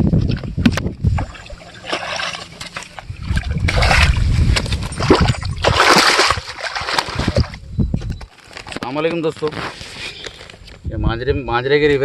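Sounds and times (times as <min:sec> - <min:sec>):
constant low rumble: 0:00.0 - 0:08.3
river water splashing: 0:01.2 - 0:07.6.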